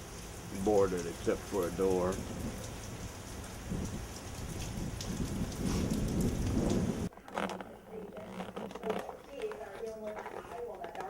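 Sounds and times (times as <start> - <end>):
heavy rain hissing: 0.0 - 8.0
low uneven rumble: 5.4 - 11.0.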